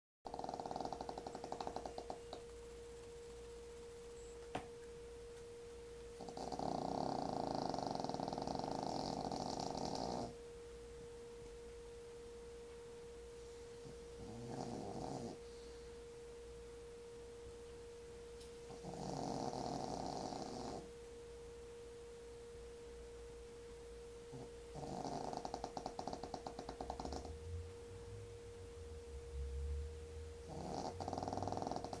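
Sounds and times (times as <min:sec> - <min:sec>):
pet snoring: 0:00.3 - 0:02.4, 0:06.2 - 0:10.4, 0:13.8 - 0:15.9, 0:18.7 - 0:20.9, 0:24.3 - 0:27.6, 0:30.4 - 0:32.0
faint steady hum: 0:00.3 - 0:32.0.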